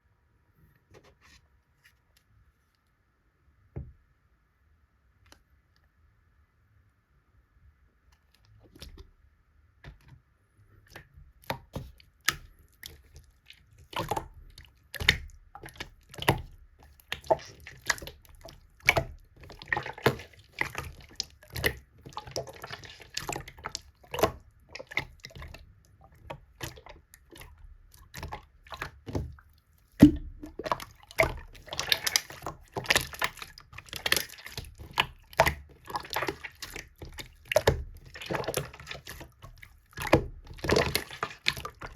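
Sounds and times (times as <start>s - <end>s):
slime squishing by hand: 10.8s - 41.9s.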